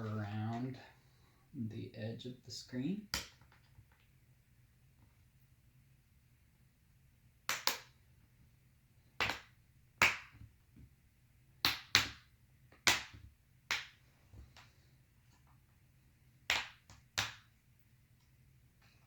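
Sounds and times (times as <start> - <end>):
sharp plastic snaps: 7.4 - 8.0.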